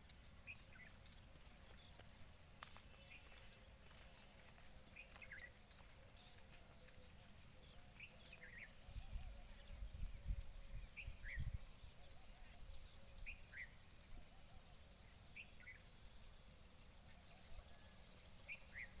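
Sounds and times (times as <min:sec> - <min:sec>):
bird chirping: 0:00.0 - 0:19.0
wind rumble on microphone: 0:08.4 - 0:14.4.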